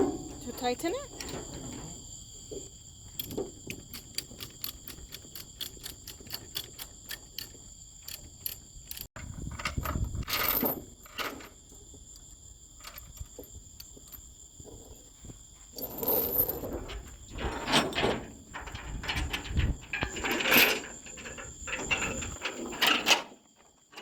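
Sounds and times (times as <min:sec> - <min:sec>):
insects trilling: 0:00.0 - 0:24.0
ratchet strap clicking: 0:03.2 - 0:09.1.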